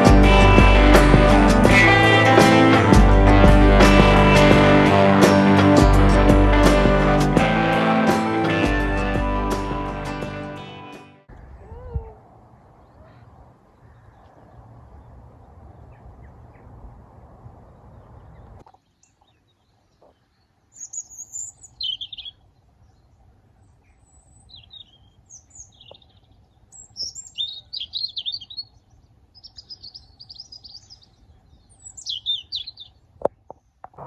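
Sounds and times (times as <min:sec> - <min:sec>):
small birds chirping: 0:17.9 - 0:33.8.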